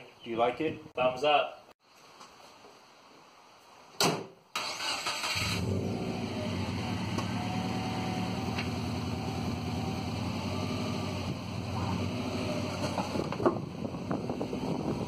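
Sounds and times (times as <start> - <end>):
car engine idling: 5.6 - 13.9.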